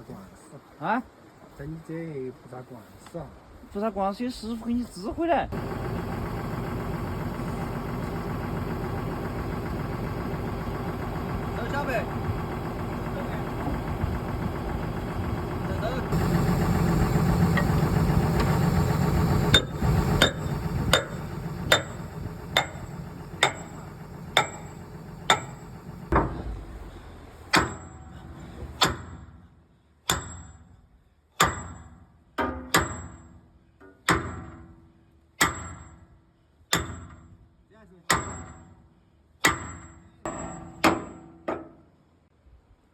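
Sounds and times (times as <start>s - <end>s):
engine running: 5.5s - 28.8s
hammer striking steel: 19.4s - 26.7s, 27.5s - 28.1s, 30.1s - 30.6s.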